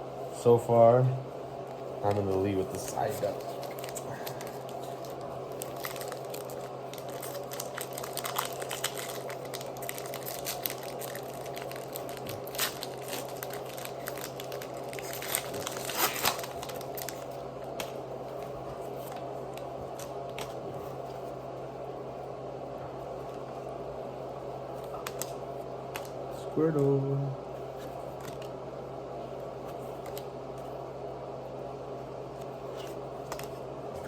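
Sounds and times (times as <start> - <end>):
steady low hum: 0.0 - 34.0
foil wrappers crinkling and tearing: 2.4 - 18.4.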